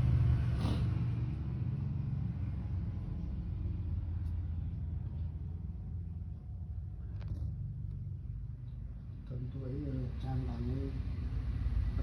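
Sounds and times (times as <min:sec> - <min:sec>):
cat snoring: 0:00.6 - 0:00.9.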